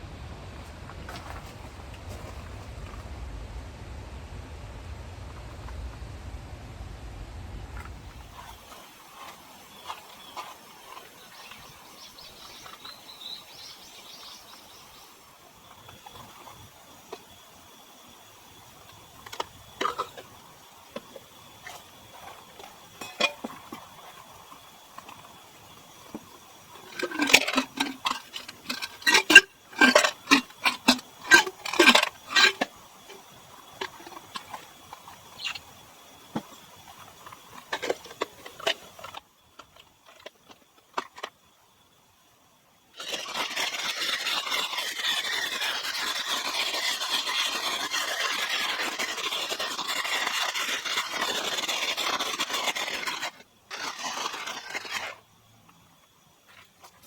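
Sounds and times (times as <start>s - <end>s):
steady hiss: 0.0s - 57.0s.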